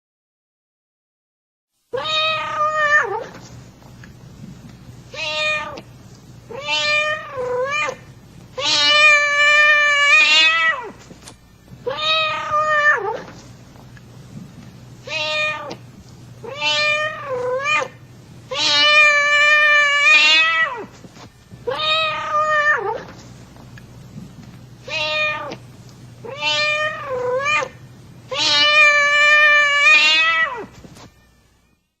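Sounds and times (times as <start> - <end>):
cat meowing: 2.0 - 3.4, 5.1 - 5.8, 6.5 - 11.0, 11.9 - 13.3, 15.0 - 15.8, 16.4 - 20.9, 21.7 - 23.1, 24.8 - 25.6, 26.2 - 31.4.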